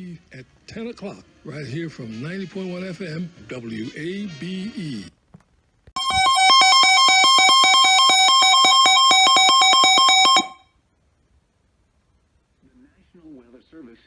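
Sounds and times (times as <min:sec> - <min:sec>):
harsh electronic alarm tone: 0:06.0 - 0:10.6.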